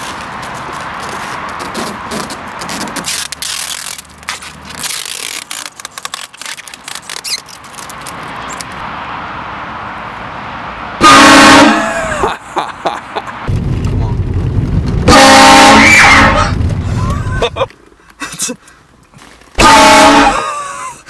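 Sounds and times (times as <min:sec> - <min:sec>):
train horn blast: 0:11.0 - 0:12.0, 0:15.1 - 0:16.5, 0:19.6 - 0:20.4.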